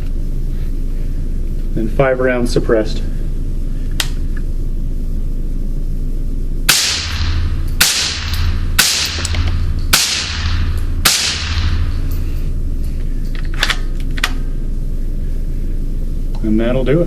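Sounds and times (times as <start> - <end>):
suppressed rifle shots: 6.7 - 11.9
echo off walls: 6.7 - 12.7.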